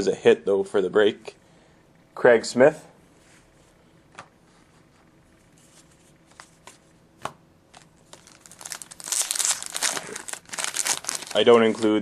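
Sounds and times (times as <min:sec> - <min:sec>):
wrapper crinkling and tearing: 0:07.7 - 0:12.0.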